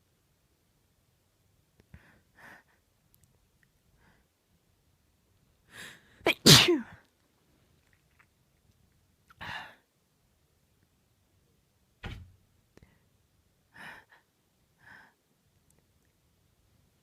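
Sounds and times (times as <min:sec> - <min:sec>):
soft thump: 0:12.0 - 0:12.4
woman's soft breaths: 0:13.7 - 0:15.2.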